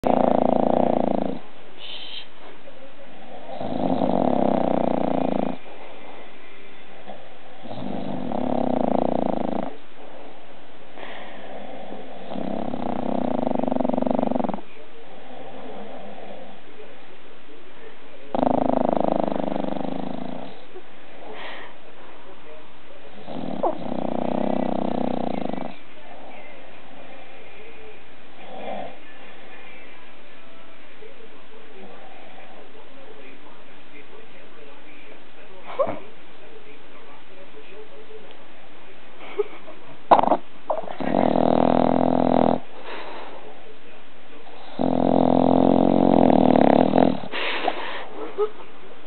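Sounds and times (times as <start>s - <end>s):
dog snoring loudly: 0.0s - 1.4s, 3.1s - 5.7s, 7.0s - 10.4s, 11.0s - 16.6s, 18.3s - 20.7s, 23.1s - 25.8s, 28.3s - 29.0s, 40.1s - 42.7s, 44.5s - 47.5s.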